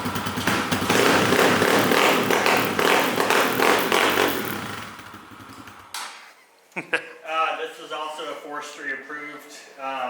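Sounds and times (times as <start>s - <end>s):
motorcycle engine revving in blips: 0.0s - 6.0s.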